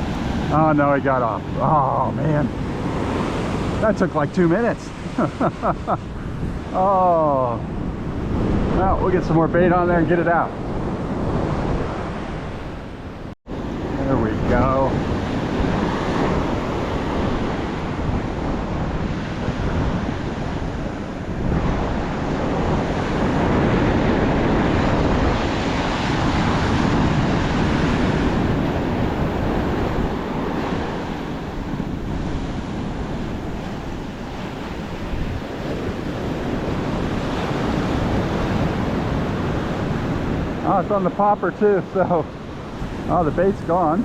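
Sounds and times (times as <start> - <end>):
ocean surf washing on beach: 0.0 - 44.0
wind buffeting microphone: 0.0 - 44.0.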